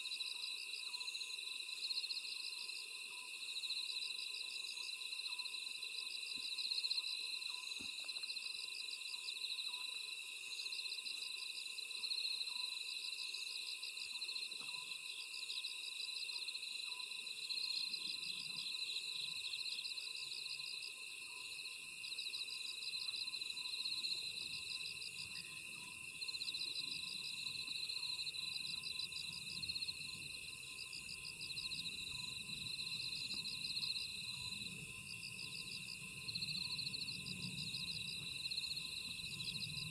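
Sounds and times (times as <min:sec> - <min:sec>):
crickets trilling: 0:00.1 - 0:39.9
insect pulsed chirps: 0:16.9 - 0:39.9.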